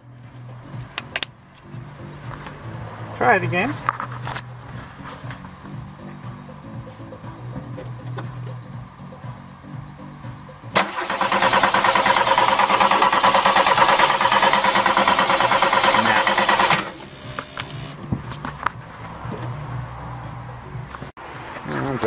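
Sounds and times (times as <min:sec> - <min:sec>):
starter motor cranking engine: 0:10.8 - 0:18.0.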